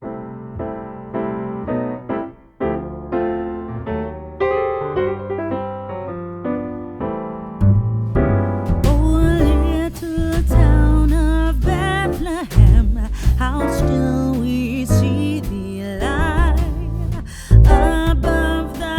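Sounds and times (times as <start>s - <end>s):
piano-like keyboard chords: 0.0s - 18.9s
heavy bass line: 7.6s - 18.9s.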